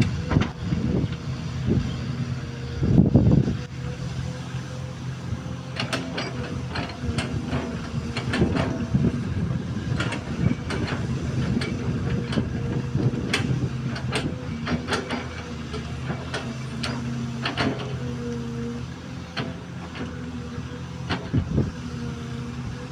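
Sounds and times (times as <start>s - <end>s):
excavator diesel engine running: 0.0s - 22.9s
metallic clanks and knocks: 5.8s - 9.0s, 13.2s - 18.0s.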